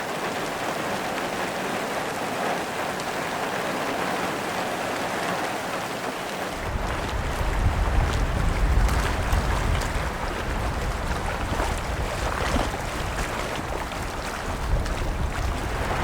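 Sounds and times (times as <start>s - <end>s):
waves lapping and splashing: 0.0s - 16.0s
wind buffeting microphone: 6.5s - 16.0s.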